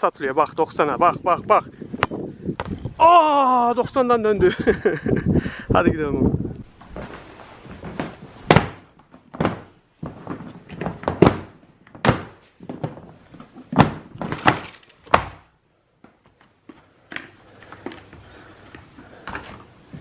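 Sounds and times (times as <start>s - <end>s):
dull thuds and knocks: 7.0s - 15.4s.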